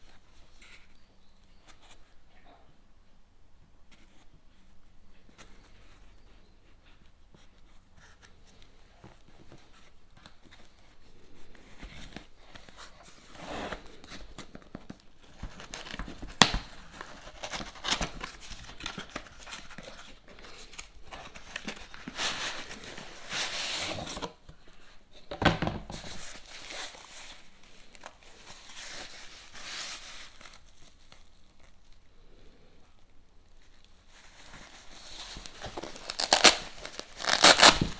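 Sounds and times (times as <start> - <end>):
packaging rustling and crinkling: 11.8 - 24.4, 33.6 - 37.9.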